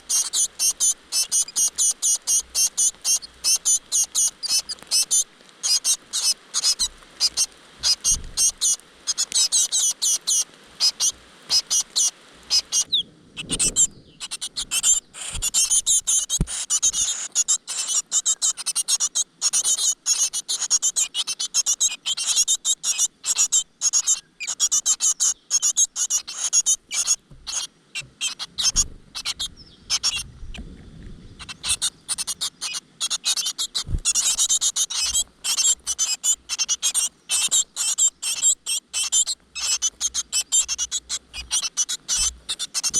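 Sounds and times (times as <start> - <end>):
nestlings cheeping: 0.0 - 30.3, 31.4 - 42.9.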